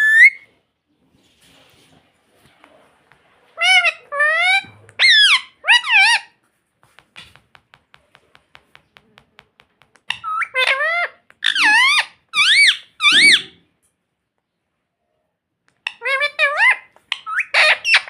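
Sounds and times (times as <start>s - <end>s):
parrot shrill calls: 0.0s - 0.5s, 3.6s - 6.4s, 10.1s - 13.6s, 15.8s - 18.0s.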